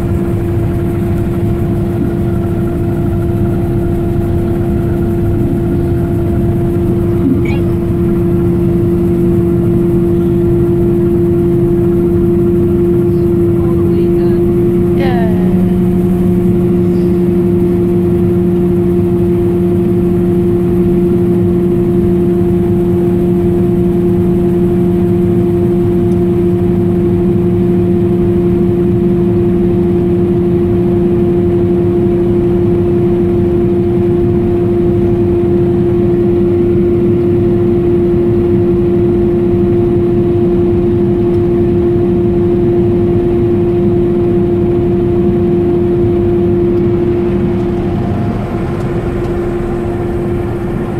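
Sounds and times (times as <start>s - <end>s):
combine harvester droning: 0.0s - 50.9s.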